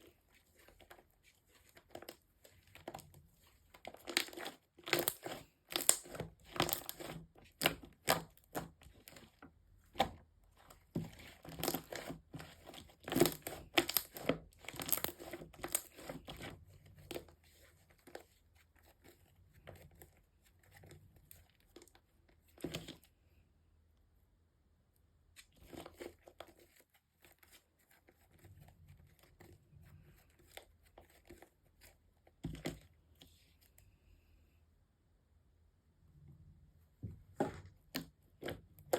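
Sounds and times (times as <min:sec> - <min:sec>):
slime crackling and popping: 0:03.9 - 0:08.7, 0:13.0 - 0:16.4.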